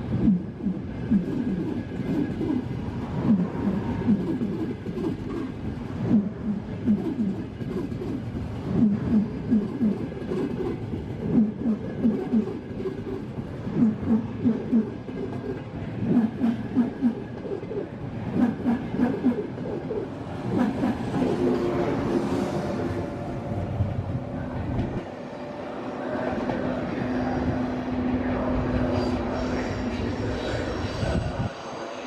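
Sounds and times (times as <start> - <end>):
train hum: 0.0 - 32.0.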